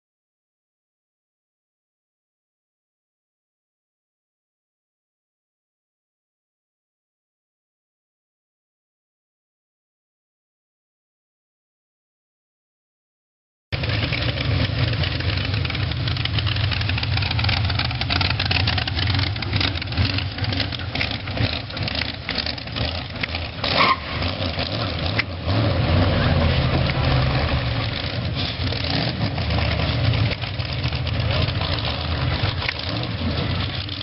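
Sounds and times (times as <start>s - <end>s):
engine idling unevenly: 13.8s - 34.0s
engine popping: 13.8s - 34.0s.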